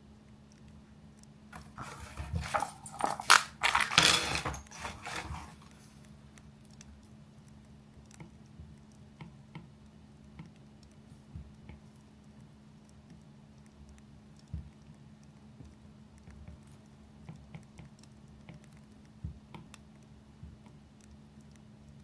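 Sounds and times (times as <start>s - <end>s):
objects clattering and rustling: 1.6s - 6.0s
faint scattered clicks: 6.0s - 22.0s.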